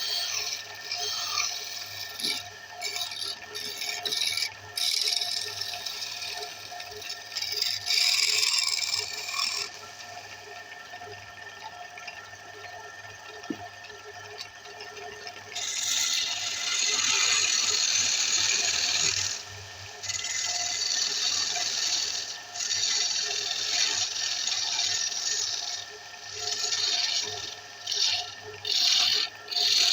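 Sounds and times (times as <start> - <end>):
lathe motor hum: 0.0 - 11.0, 14.9 - 29.9.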